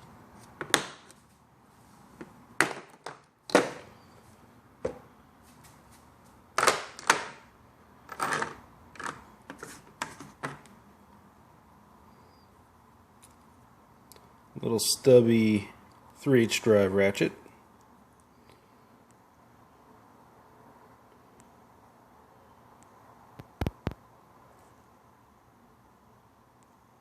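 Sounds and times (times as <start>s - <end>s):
plastic case and tools clacking: 8.1s - 10.6s.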